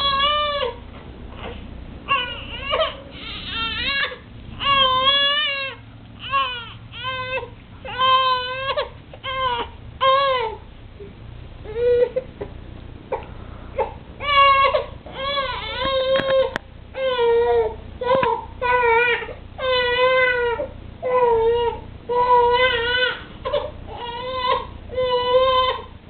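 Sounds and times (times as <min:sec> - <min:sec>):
infant crying: 0:00.0 - 0:00.8, 0:02.1 - 0:10.6, 0:13.8 - 0:25.9.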